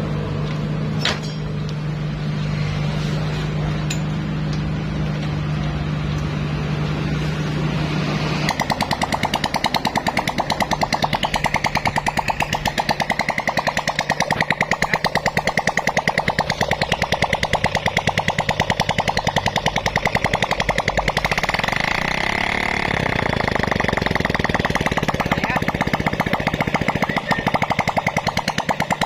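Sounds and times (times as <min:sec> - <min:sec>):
motorcycle engine popping: 0:08.3 - 0:29.0.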